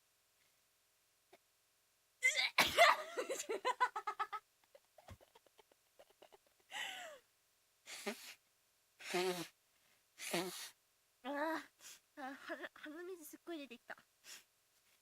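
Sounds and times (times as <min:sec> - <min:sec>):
woman giggling: 0:02.3 - 0:07.2
breathy sigh: 0:06.7 - 0:07.2.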